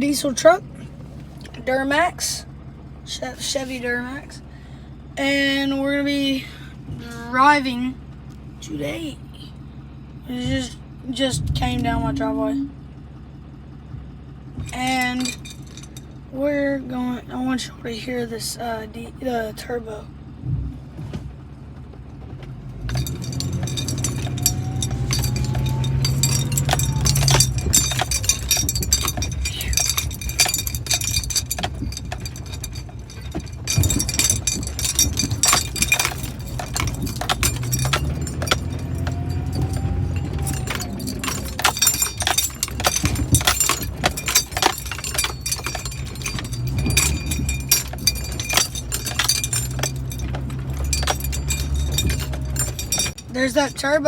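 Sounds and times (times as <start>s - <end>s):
loose items jangling: 14.6s - 16.6s, 22.6s - 54.0s
diesel engine accelerating hard: 19.0s - 53.7s.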